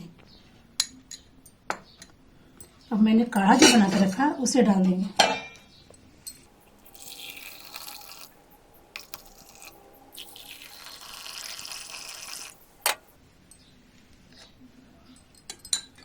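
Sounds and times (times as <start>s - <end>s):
glass clink: 5.2s - 8.2s, 15.1s - 16.0s
liquid pouring into glasses: 6.3s - 13.2s.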